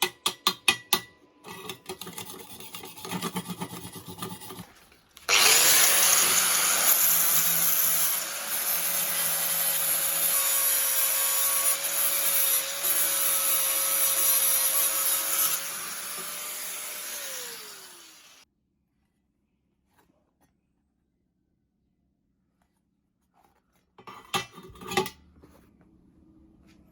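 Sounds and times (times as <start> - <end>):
angle grinder motor whine: 5.3 - 18.4.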